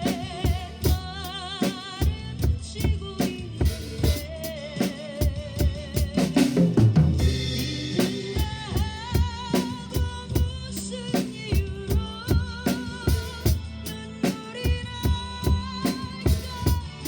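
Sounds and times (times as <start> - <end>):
drum kit playing: 0.0 - 17.0
recorded song with melody: 0.0 - 17.0.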